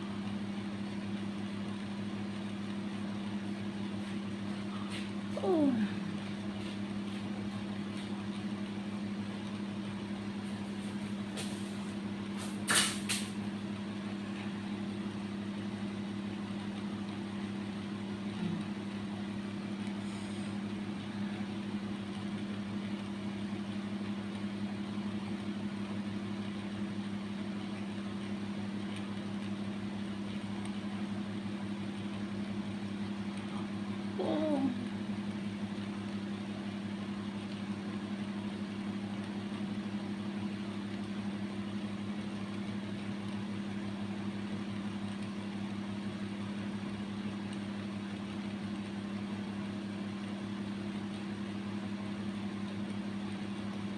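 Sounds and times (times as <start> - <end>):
steady low hum: 0.0 - 53.9
sharp click: 12.4 - 13.4.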